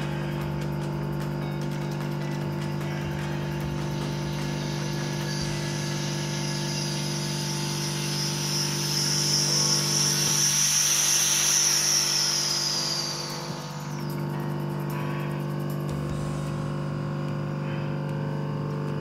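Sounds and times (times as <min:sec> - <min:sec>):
steady low hum: 0:00.0 - 0:19.0
air hissing into chamber: 0:04.1 - 0:14.8.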